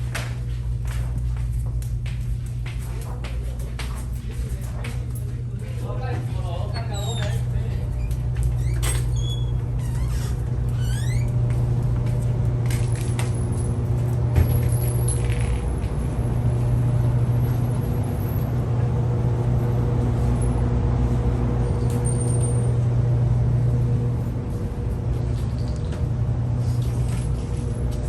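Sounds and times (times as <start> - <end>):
low mechanical hum: 0.0 - 28.0.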